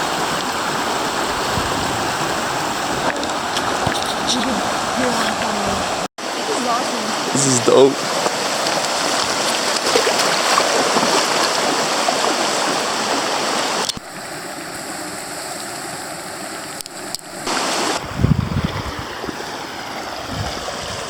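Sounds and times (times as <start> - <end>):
low rumbling gusts: 0.0 - 6.1, 18.0 - 19.4, 20.1 - 21.0
floodwater rushing: 0.0 - 21.0.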